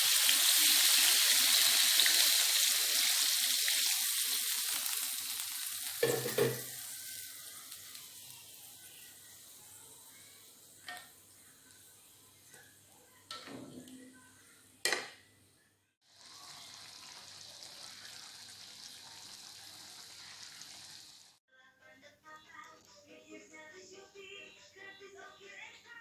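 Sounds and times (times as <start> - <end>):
chicken sizzling in a pan: 0.0 - 12.5, 16.0 - 21.4.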